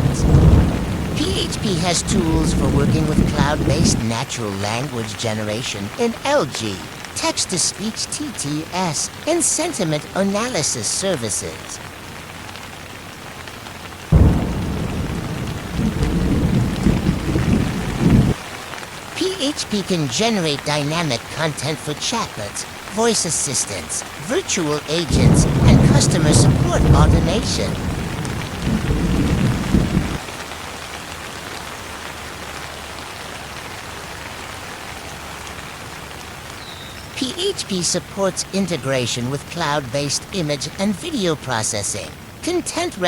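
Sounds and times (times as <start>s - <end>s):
thunder cracking and rumbling: 0.0s - 4.2s, 14.1s - 18.4s, 25.0s - 30.2s
rain hiss: 0.0s - 43.0s.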